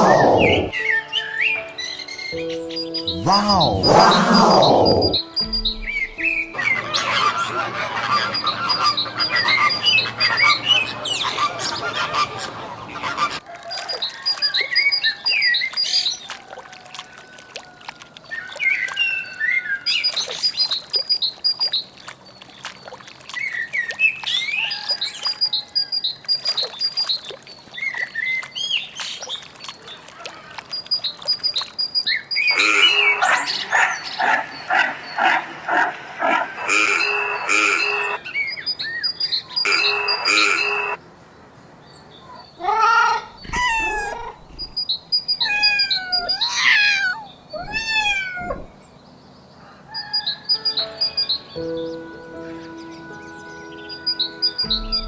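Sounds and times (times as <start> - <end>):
birds chirping and squawking: 0.0 - 0.8, 1.8 - 13.4, 32.1 - 41.0, 42.0 - 49.1
rapid bird calls: 0.0 - 0.8, 3.0 - 13.4, 30.4 - 41.0, 42.2 - 48.9.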